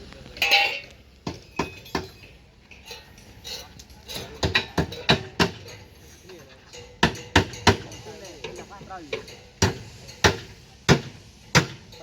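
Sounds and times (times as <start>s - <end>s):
scraping metal clank: 0.4s - 10.6s.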